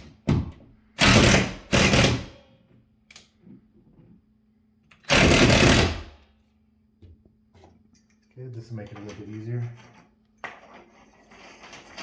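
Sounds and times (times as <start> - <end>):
power drill running: 1.0 - 2.2, 5.1 - 6.1.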